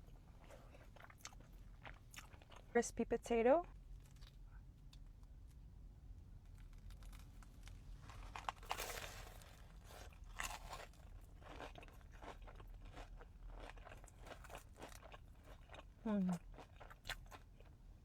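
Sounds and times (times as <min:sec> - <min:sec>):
crunchy chewing: 0:00.4 - 0:02.7, 0:06.5 - 0:17.8
crunchy bites into food: 0:06.5 - 0:15.8.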